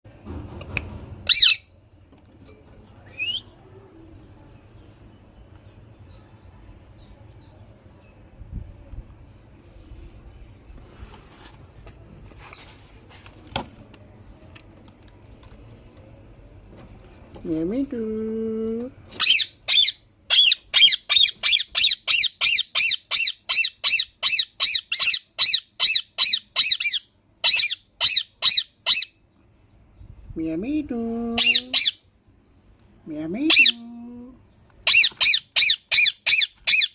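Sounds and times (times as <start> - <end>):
faint chirps: 2.4 - 10.7
parrot squawking: 19.2 - 29.1, 31.4 - 32.0, 33.5 - 33.8, 34.8 - 36.9.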